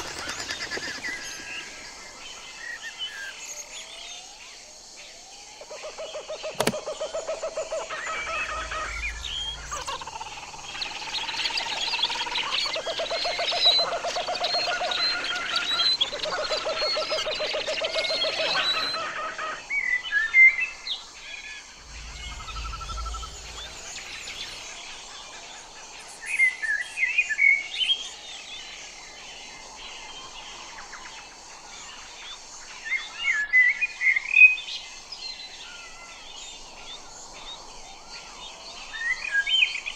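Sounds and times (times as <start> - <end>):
blackbird singing: 5.7 - 20.3, 21.8 - 24.7.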